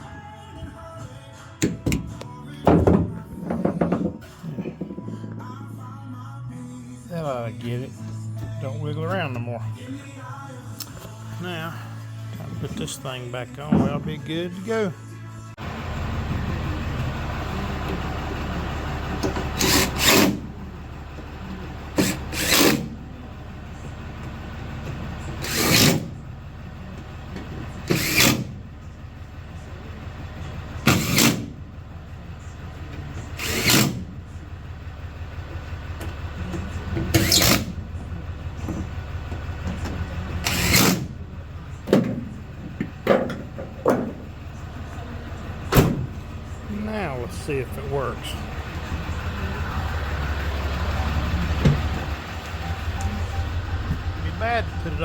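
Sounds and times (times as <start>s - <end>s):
steady low hum: 3.0s - 55.0s
power drill driving screws: 33.4s - 34.0s, 37.2s - 37.7s.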